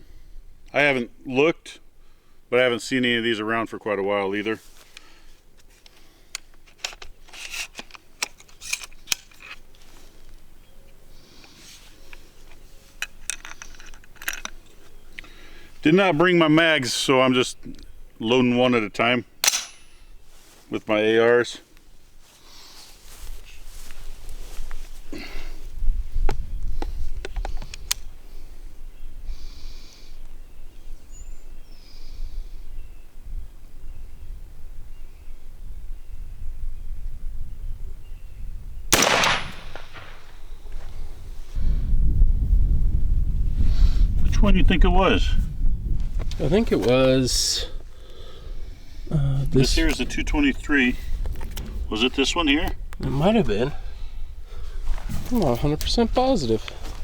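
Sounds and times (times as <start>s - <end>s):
soft rustles: 4.5s - 10.4s, 20.2s - 20.9s, 21.6s - 27.1s, 54.5s - 57.0s
rifle metal clicks and rattles: 5.8s - 9.8s, 12.1s - 15.3s, 39.0s - 40.4s
rifle action metallic clicks: 19.4s - 19.9s, 38.9s - 40.4s.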